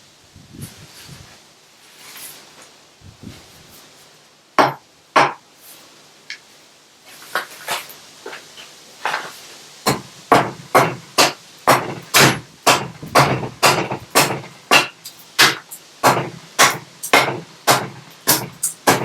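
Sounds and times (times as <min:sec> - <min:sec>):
axe chopping wood: 0:09.8 - 0:19.0.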